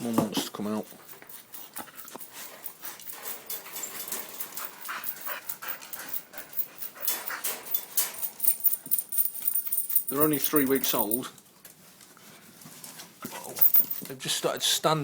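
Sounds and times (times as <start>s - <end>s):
dog panting: 0.7s - 11.1s.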